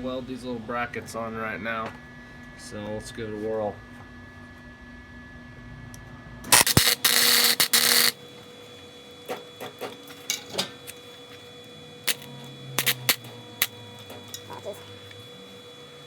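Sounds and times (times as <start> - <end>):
sharp pops and clicks: 6.5 - 8.1, 12.1 - 13.2
welding arc crackling: 6.5 - 8.3, 12.1 - 15.2.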